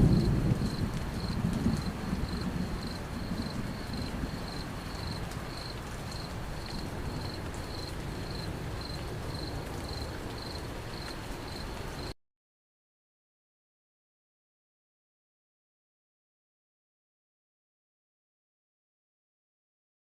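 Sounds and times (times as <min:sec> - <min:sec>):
cricket chirping: 0:00.1 - 0:12.1.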